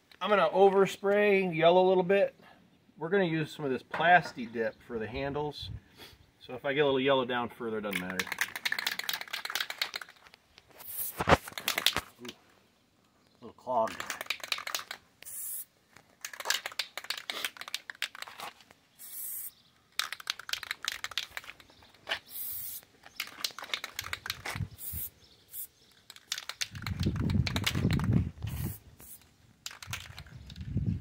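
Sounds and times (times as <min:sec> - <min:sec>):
spray-paint can hissing: 0:10.8 - 0:11.8, 0:14.2 - 0:15.7, 0:19.0 - 0:21.5, 0:22.1 - 0:30.0.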